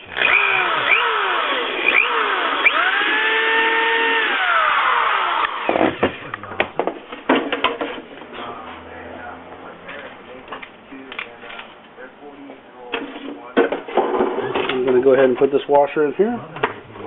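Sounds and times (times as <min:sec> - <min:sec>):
power drill running: 0:00.0 - 0:05.8.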